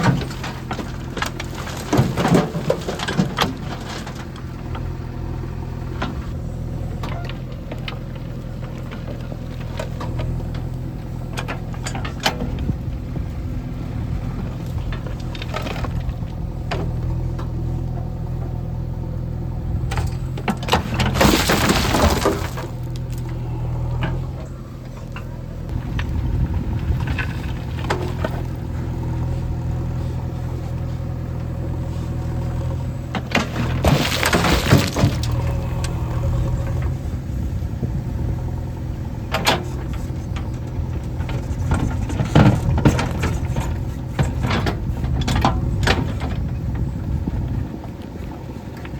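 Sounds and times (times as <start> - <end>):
diesel engine running: 0.0 - 48.9
soil crashing into trolley: 20.4 - 24.3, 33.1 - 37.0.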